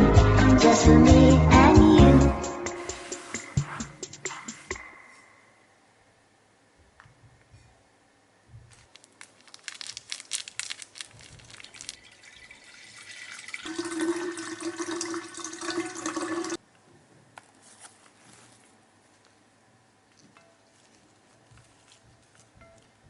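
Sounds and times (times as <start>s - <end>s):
clicks and crinkling: 8.6s - 12.3s, 17.3s - 19.5s, 20.1s - 23.0s
water running: 11.6s - 16.6s.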